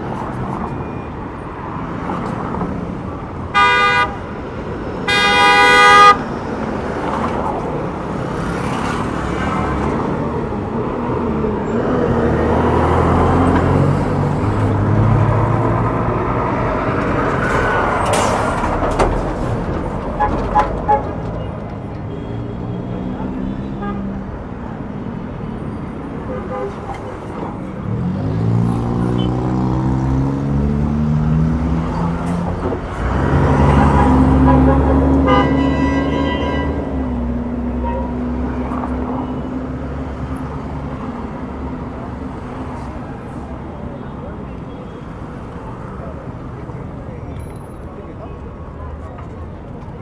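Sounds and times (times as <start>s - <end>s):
vehicles passing: 0.0s - 50.0s
heavy engine low rumble: 9.9s - 26.0s.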